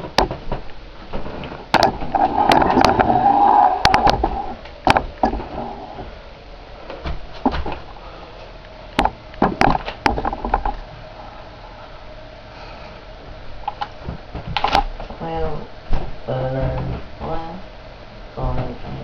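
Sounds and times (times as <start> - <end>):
sharp clicks and knocks: 0.0 - 5.7, 9.0 - 10.8
faint steady hum: 0.0 - 19.0.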